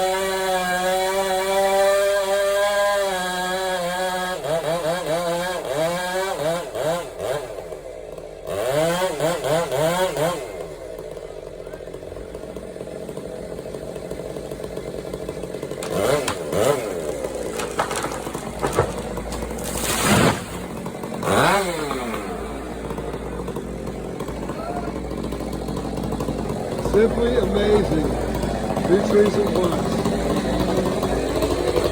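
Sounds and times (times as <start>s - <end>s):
chainsaw cutting timber: 0.0s - 31.9s
sharp knocks: 17.5s - 20.6s.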